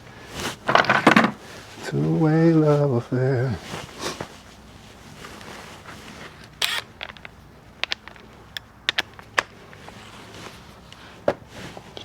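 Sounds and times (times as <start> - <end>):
metal tools clicking and clinking: 6.6 - 9.8.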